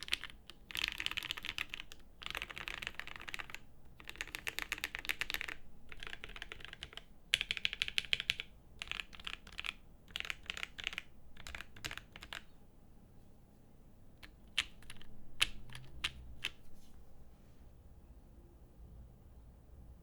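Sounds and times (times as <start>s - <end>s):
mechanical keyboard typing: 0.0s - 12.5s, 14.2s - 16.6s.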